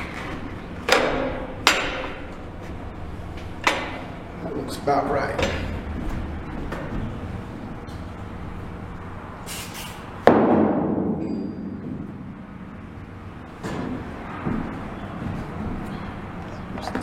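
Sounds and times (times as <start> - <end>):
brief scrape: 9.5 - 10.1.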